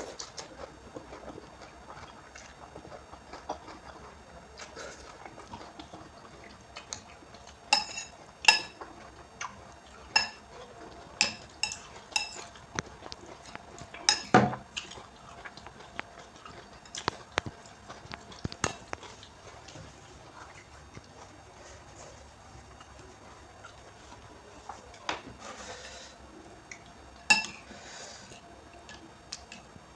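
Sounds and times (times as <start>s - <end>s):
cutlery clinking against a bowl: 7.7s - 8.8s, 10.1s - 10.4s, 11.2s - 12.6s, 14.0s - 14.6s, 27.3s - 27.6s.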